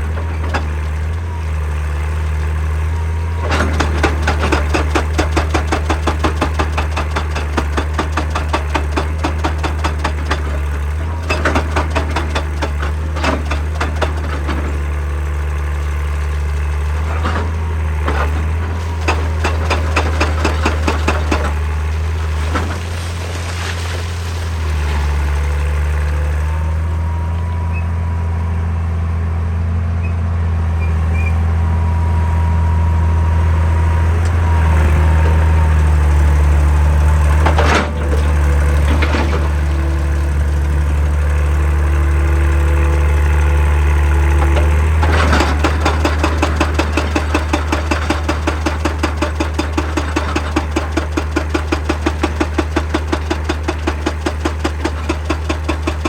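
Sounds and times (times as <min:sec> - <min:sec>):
hydraulic rock breaker hammering: 0:00.0 - 0:01.6, 0:02.5 - 0:23.4, 0:34.2 - 0:56.0
excavator diesel engine running: 0:00.0 - 0:56.0.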